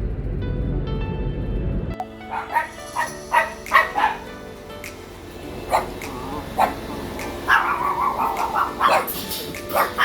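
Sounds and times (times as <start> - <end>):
background music: 0.0 - 10.0
dog barking: 2.3 - 4.3, 5.7 - 10.0.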